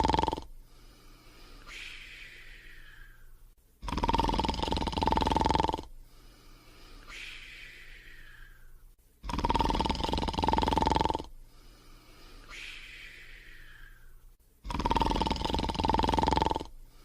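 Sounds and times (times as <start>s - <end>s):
cartoon dog buzzing snore: 0.0s - 0.5s, 3.8s - 5.9s, 9.2s - 11.3s, 14.6s - 16.8s.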